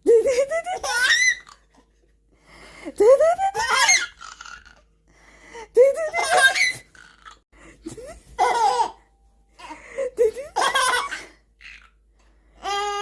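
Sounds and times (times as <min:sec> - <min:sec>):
baby laughing in squeals: 0:00.3 - 0:01.6, 0:03.5 - 0:04.8, 0:06.0 - 0:07.4, 0:10.2 - 0:12.0.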